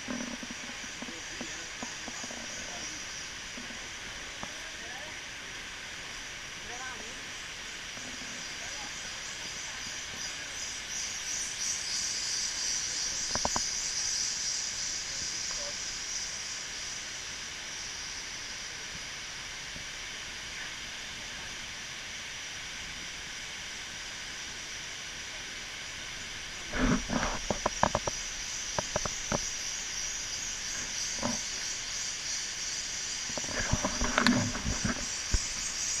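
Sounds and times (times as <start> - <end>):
thumps and crackles: 26.7 - 29.5, 33.3 - 35.7.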